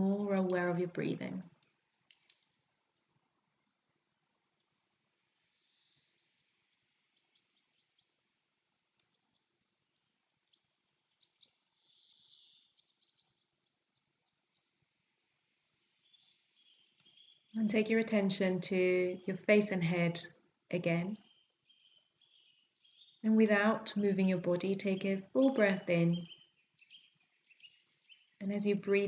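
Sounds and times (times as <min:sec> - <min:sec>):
birds chirping: 0:00.0 - 0:01.4, 0:08.9 - 0:14.9, 0:15.8 - 0:29.0.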